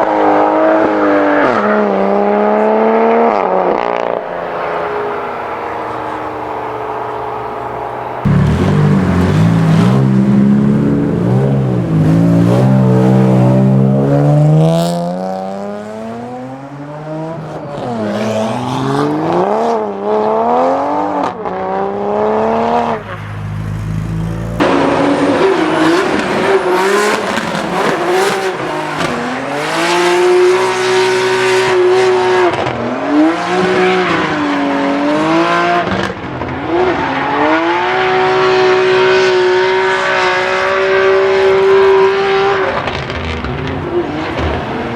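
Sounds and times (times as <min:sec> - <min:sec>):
car engine revving: 0:00.0 - 0:44.9
tire squeal: 0:04.0 - 0:10.3.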